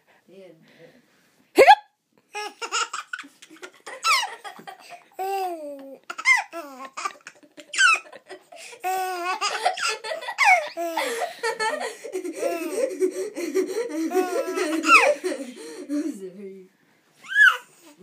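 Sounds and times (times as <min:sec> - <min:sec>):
sharp hiccup: 0:01.6 - 0:02.0
high-pitched laughter: 0:05.5 - 0:16.2.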